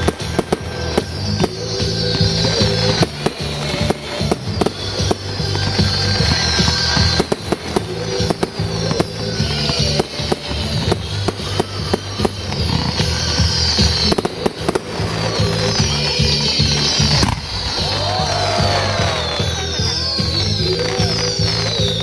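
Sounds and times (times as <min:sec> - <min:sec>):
fireworks bangs and crackles: 0:00.0 - 0:22.0
fireworks whistling hiss: 0:00.0 - 0:22.0
loud music with bass: 0:00.0 - 0:22.0.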